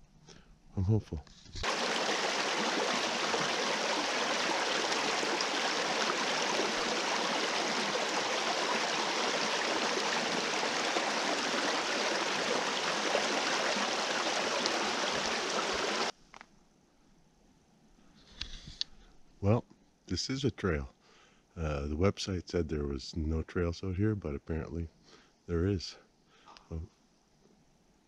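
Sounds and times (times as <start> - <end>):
stream water flowing: 1.6 - 16.1.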